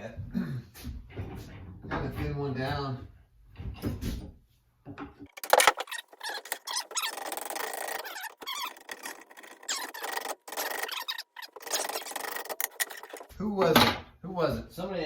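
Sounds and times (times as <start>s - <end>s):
tool scraping wooden handle: 5.3s - 13.4s.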